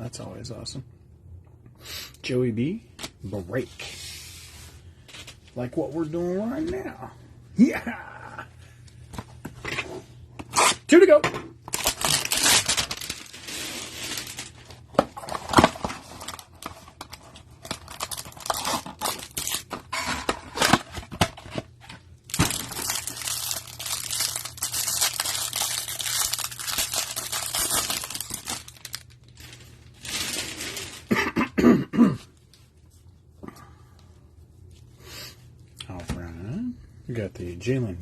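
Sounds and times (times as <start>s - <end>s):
cardboard tearing: 11.7s - 16.6s, 17.7s - 19.7s, 22.3s - 31.1s
plastic wrapper crinkling: 11.7s - 19.9s, 20.5s - 31.1s.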